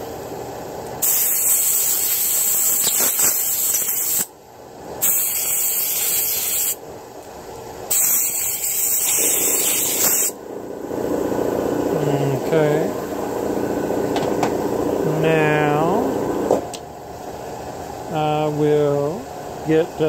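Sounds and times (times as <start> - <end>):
aerosol spray hissing: 1.0 - 4.3, 5.0 - 6.8, 7.9 - 10.4.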